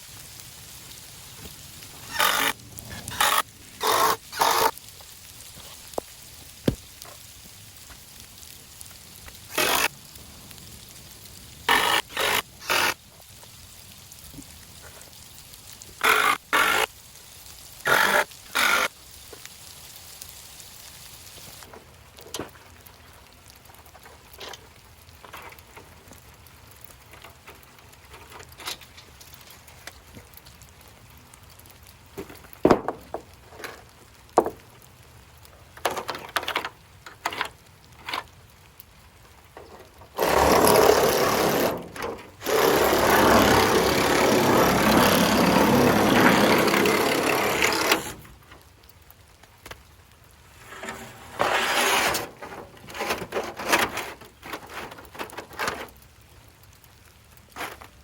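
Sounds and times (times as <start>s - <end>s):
knocks from handling lumber: 32.6s - 33.2s
loud power tool running: 42.4s - 48.1s.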